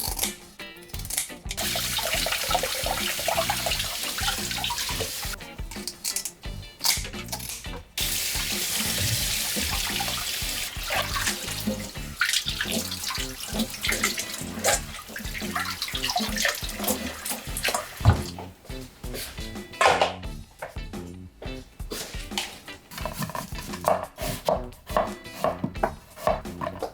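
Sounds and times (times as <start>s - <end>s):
tap running into sink: 1.6s - 5.4s, 8.0s - 18.6s
clinks and knocks of handling: 5.6s - 7.9s.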